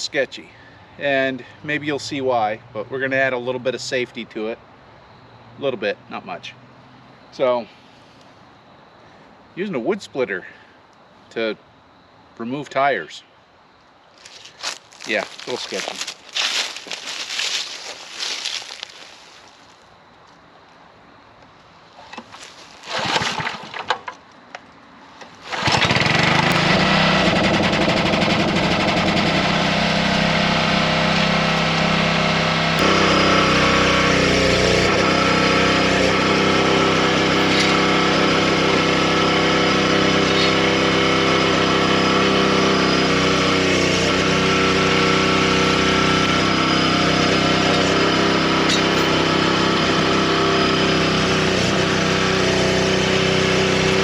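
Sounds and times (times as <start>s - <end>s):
small gasoline engine running: 25.5s - 54.0s.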